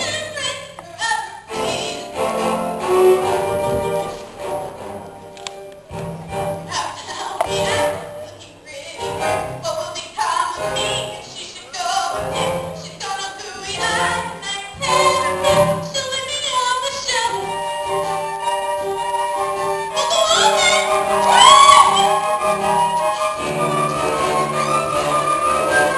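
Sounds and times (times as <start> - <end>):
instrumental accompaniment: 1.4 - 8.3, 12.1 - 25.9.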